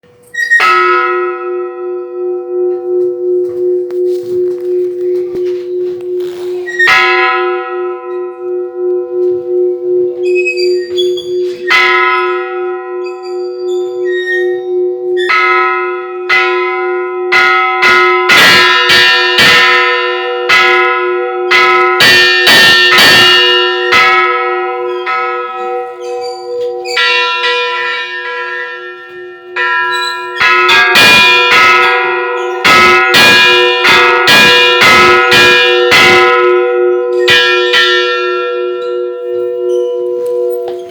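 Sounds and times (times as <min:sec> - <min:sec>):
low bell tone: 0:00.3 - 0:40.9
small bells struck in flurries: 0:22.6 - 0:35.4.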